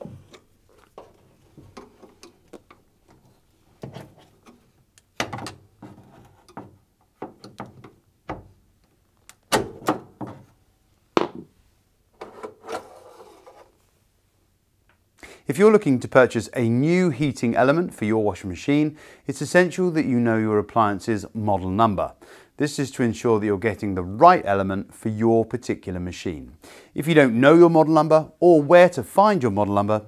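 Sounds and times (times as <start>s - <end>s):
knocks and scrapes on metal: 5.2s - 8.5s.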